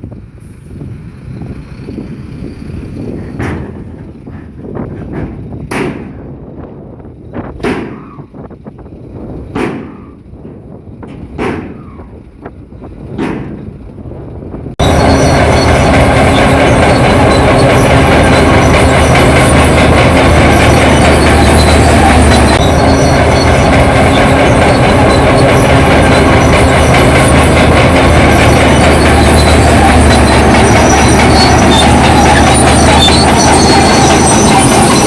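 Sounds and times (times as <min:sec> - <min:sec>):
bulldozer engine rumble: 0:00.0 - 0:35.0
steel tracks clanking: 0:01.2 - 0:35.0
sharp metal clank: 0:07.6 - 0:08.3
steady whining tones: 0:09.2 - 0:35.0.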